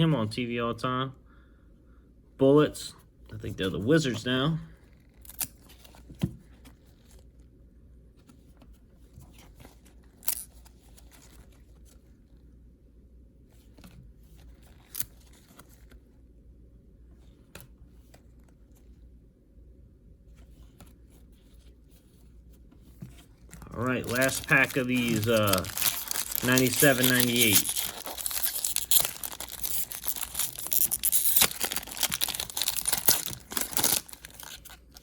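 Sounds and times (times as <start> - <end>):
cards rustling and sliding: 22.7 - 35.0.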